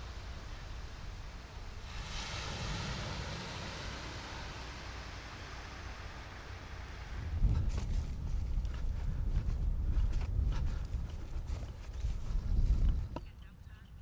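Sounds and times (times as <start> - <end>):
steady hiss: 0.0 - 7.5
low rumble: 0.0 - 13.3.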